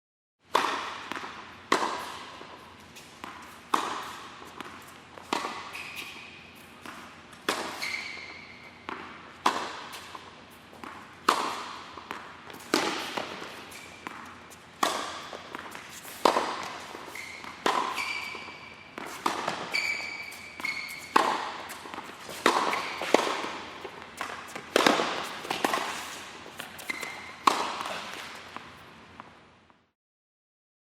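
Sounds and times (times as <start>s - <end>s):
paddle hitting ball: 8.8s - 10.2s, 10.8s - 20.0s, 20.6s - 28.7s
high-pitched squeaks: 17.1s - 18.8s, 19.7s - 21.2s.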